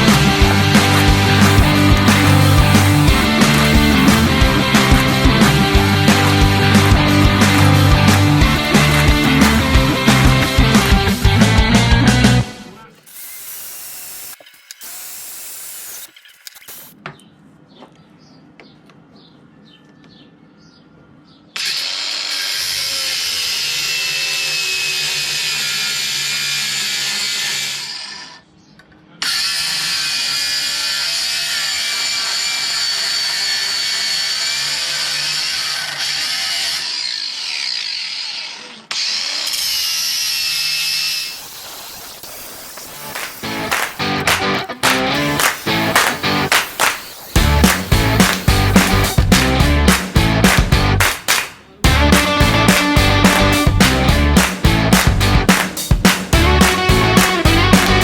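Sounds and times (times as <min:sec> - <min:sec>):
handheld power tool running: 0:00.0 - 0:11.4, 0:12.9 - 0:17.0, 0:29.2 - 0:50.7.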